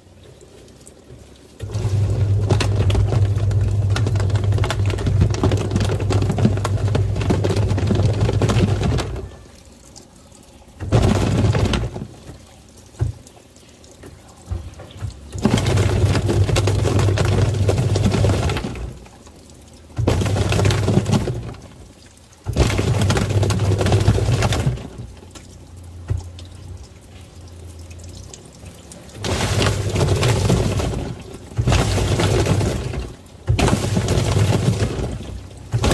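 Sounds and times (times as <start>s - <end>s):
water churning and sloshing: 0.0s - 35.9s
washing machine motor hum: 1.1s - 35.9s.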